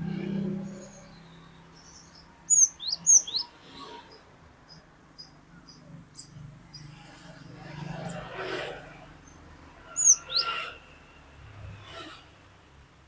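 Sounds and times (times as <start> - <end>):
low hum: 0.0 - 2.5.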